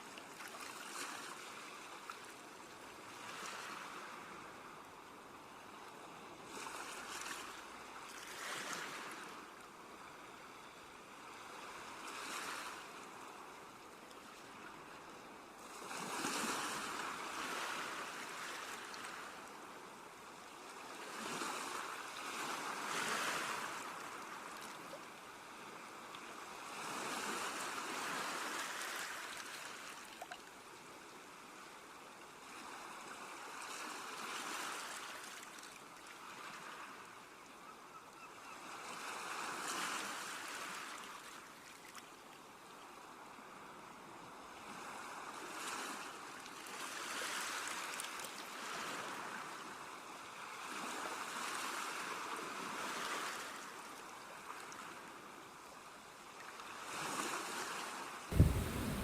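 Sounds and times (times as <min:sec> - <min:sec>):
sea waves breaking on shore: 0:06.5 - 0:09.4, 0:20.9 - 0:24.4, 0:56.8 - 0:59.0.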